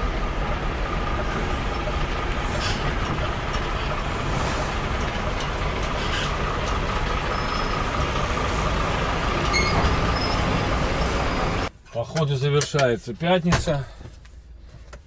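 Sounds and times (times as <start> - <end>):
diesel truck engine rumble: 0.0 - 11.7.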